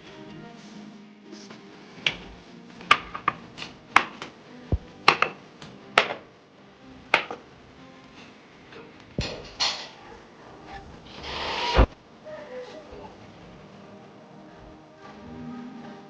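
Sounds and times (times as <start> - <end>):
dishes and utensils clinking: 8.2 - 10.1.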